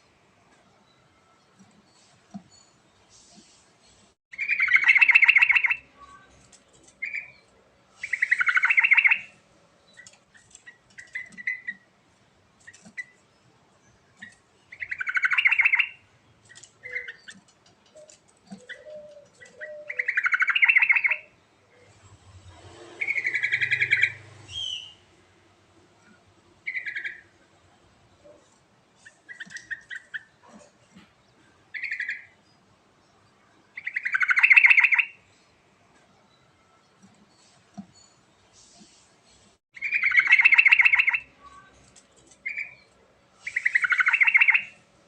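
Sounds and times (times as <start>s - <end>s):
bird chirps: 3.8s - 6.3s, 6.9s - 11.9s, 14.1s - 22.0s, 22.8s - 25.1s, 26.0s - 27.4s, 31.6s - 35.5s, 36.3s - 41.8s, 42.4s - 44.9s.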